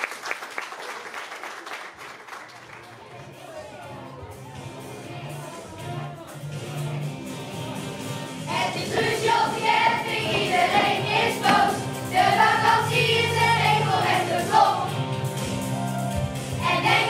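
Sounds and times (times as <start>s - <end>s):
children singing in unison: 8.5s - 14.9s, 16.6s - 17.0s.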